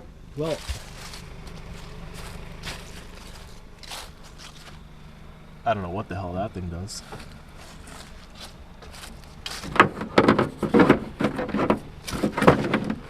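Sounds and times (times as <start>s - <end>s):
hard objects clattering: 7.2s - 13.0s.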